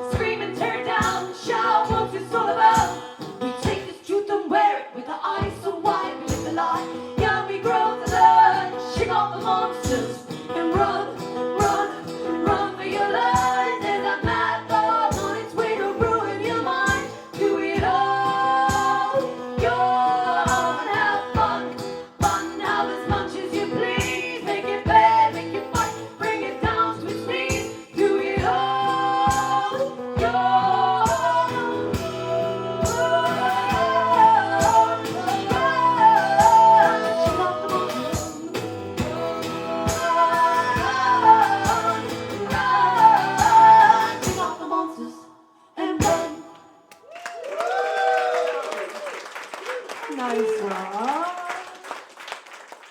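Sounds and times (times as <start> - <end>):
women singing in harmony: 0.0 - 46.7
strummed guitar: 5.4 - 44.6.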